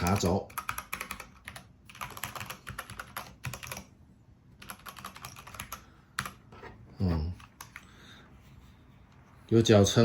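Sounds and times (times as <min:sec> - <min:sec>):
typing on mechanical keyboard: 0:00.0 - 0:03.9, 0:04.6 - 0:06.4, 0:07.4 - 0:07.8.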